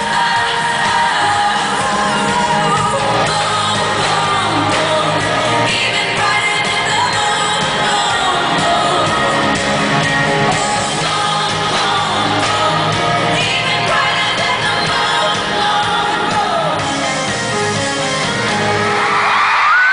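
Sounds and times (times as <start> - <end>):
audience shouting and screaming: 0.0 - 4.7, 18.6 - 19.9
woman singing: 0.0 - 9.6, 10.5 - 17.2
live band playing pop music: 0.0 - 19.9.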